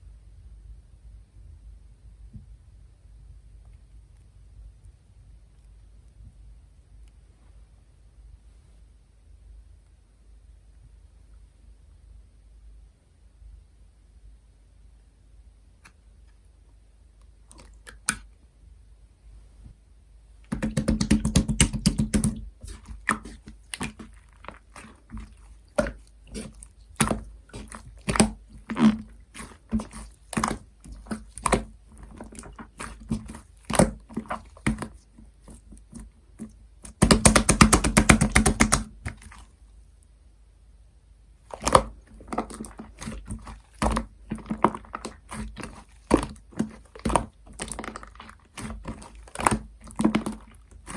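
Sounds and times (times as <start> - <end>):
slime squished by hand: 17.5 - 18.3, 20.5 - 39.6, 41.4 - 50.9.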